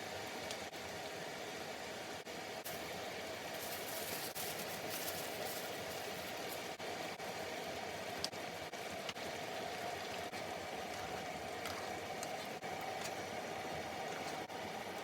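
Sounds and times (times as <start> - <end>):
sauce bubbling and sizzling in pan: 0.0 - 15.0.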